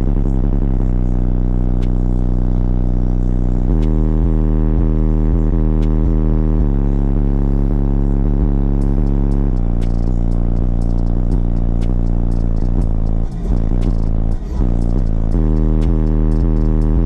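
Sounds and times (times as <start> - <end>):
subwoofer deep bass: 0.0 - 17.0.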